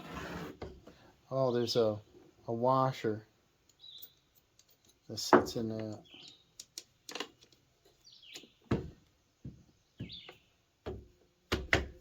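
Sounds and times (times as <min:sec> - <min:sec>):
small metal parts clicking: 0:03.6 - 0:05.1
bird chirping: 0:03.6 - 0:07.1, 0:07.8 - 0:10.7.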